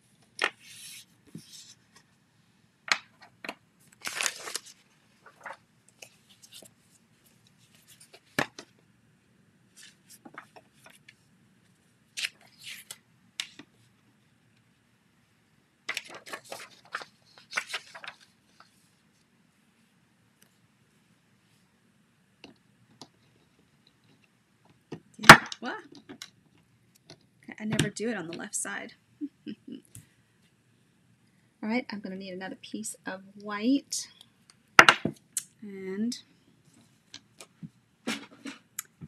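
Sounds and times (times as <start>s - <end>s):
paper rustling: 3.9s - 6.7s, 15.9s - 18.9s.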